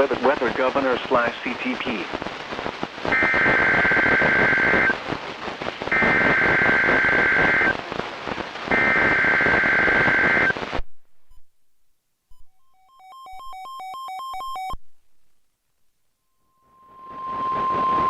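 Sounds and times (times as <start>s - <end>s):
radio static: 0.0s - 10.9s.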